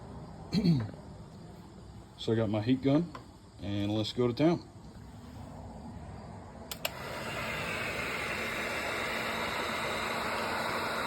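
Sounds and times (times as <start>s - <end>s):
heat gun fan blowing: 4.9s - 11.0s
heat gun switch click: 6.7s - 7.1s.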